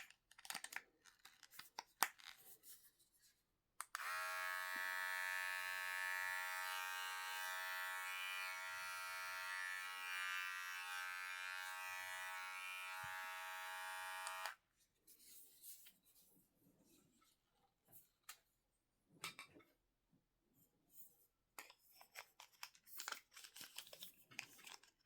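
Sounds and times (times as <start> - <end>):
hair trimmer buzzing: 4.0 - 14.6.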